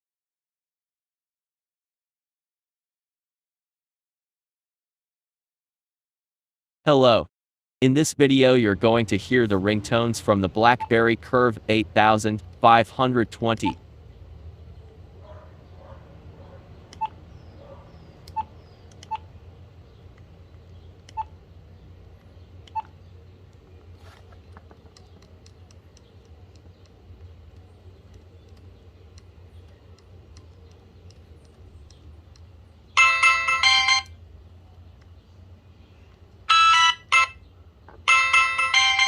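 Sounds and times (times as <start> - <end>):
low steady hum: 7.8 - 39.0
phone button clicks with beeps: 22.7 - 22.9
phone ringtone: 33.0 - 34.2, 36.5 - 37.4, 38.0 - 39.0.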